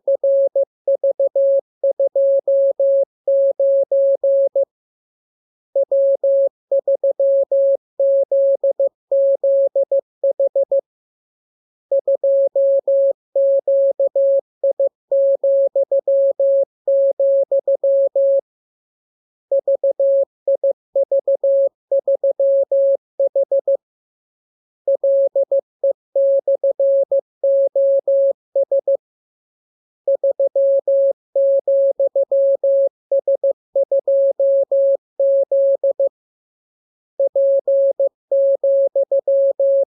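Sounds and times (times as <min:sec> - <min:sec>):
morse code beeps: 0:37.2 - 0:39.8.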